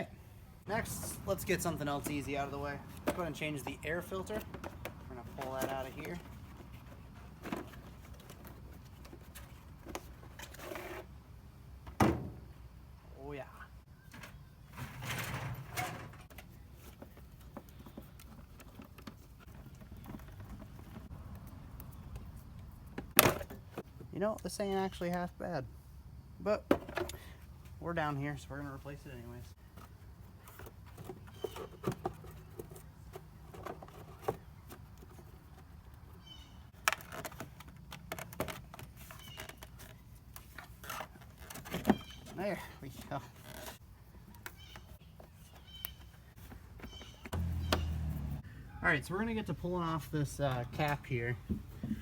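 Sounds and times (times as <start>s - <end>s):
air filter scraping rustle: 0.7s - 11.1s, 14.7s - 21.1s, 36.7s - 48.4s.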